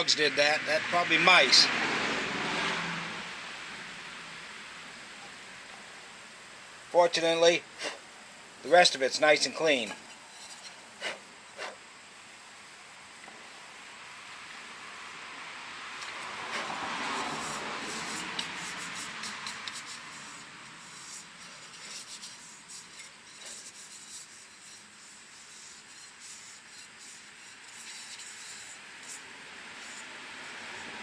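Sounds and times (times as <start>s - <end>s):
hands rubbing plastic parts: 8.7s - 11.8s, 16.0s - 31.0s.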